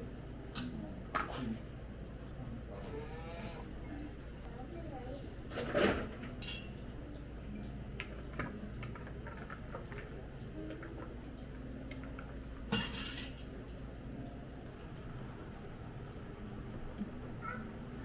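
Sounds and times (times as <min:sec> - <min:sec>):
dishes and utensils clinking: 0:00.5 - 0:01.4, 0:05.5 - 0:06.8, 0:11.9 - 0:13.6.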